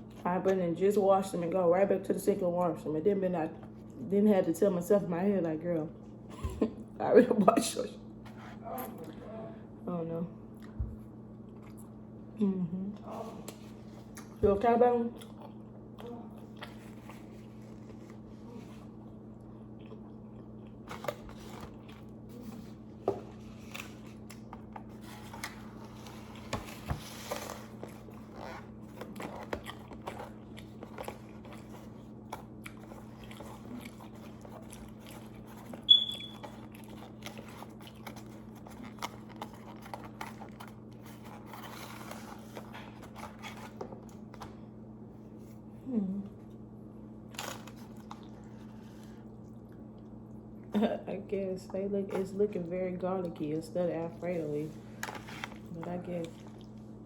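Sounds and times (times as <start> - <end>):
steady low hum: 0.0 - 57.0
person chewing: 10.5 - 12.0, 15.1 - 26.5, 27.3 - 44.4, 47.3 - 50.7
short high chirp: 35.9 - 36.4.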